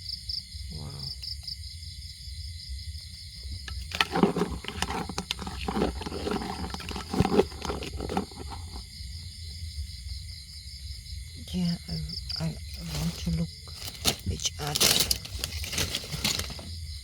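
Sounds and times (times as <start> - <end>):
night insects chorus: 0.0 - 17.0
loud rustling and crackling: 3.7 - 8.8, 12.7 - 17.0.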